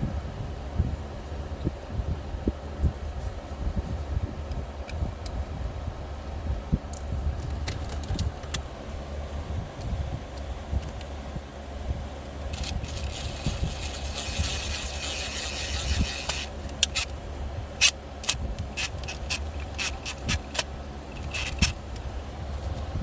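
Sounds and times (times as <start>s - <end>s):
steady low rumble: 8.8s - 23.0s
parts scraping: 12.5s - 22.1s.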